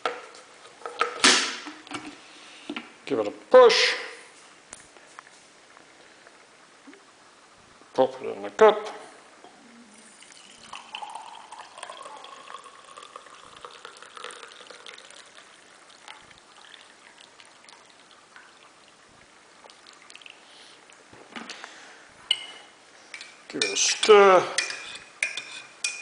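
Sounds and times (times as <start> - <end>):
coffee pouring into a cup: 10.2 - 20.5.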